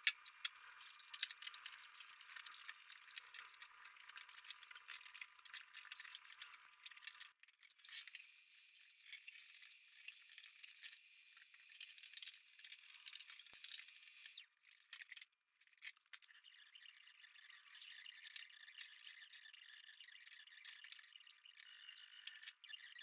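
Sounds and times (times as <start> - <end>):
rotary power tool whine: 7.9 - 14.4.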